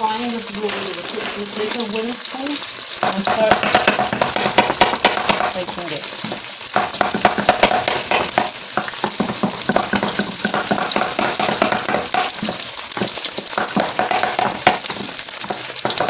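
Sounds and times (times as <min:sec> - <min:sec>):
eggs sizzling in hot oil: 0:00.0 - 0:16.0
wooden spoon scraping and tapping pan: 0:00.2 - 0:02.2, 0:02.9 - 0:16.0.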